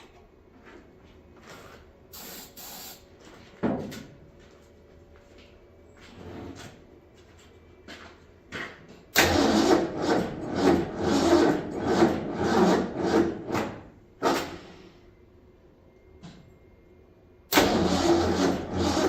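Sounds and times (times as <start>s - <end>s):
engine starter cranking: 9.2s - 13.5s, 17.5s - 19.0s.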